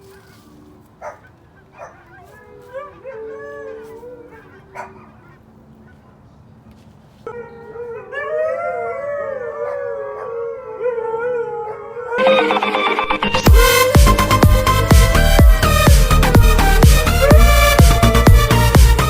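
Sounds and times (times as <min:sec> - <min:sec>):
huskies howling: 0:07.3 - 0:12.4, 0:13.5 - 0:19.0.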